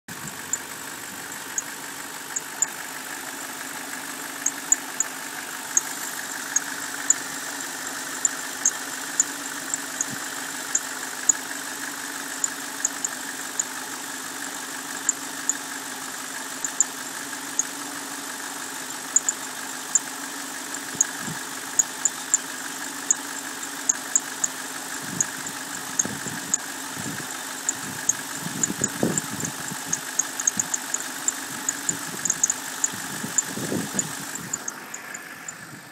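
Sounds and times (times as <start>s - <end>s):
car engine idling rough: 0.0s - 35.9s.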